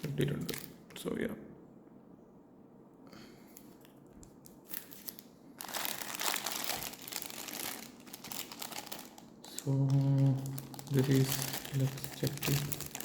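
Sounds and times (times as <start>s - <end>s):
packaging crinkling: 0.0s - 0.8s, 4.4s - 13.0s.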